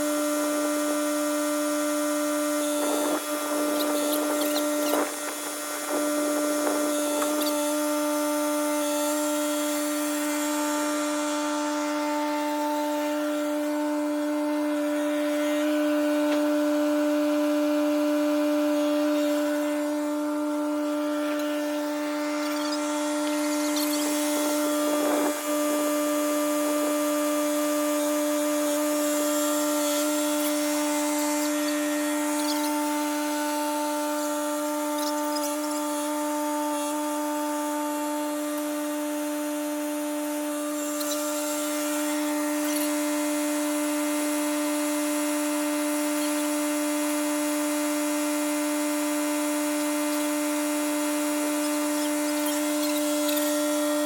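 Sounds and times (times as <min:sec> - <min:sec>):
motor humming: 0:00.0 - 0:54.0.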